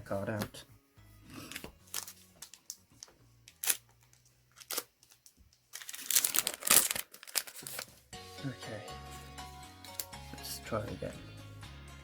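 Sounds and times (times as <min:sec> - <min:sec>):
trading cards clicking and sliding: 0:01.4 - 0:05.2
foil wrapper crinkling and tearing: 0:01.4 - 0:08.0.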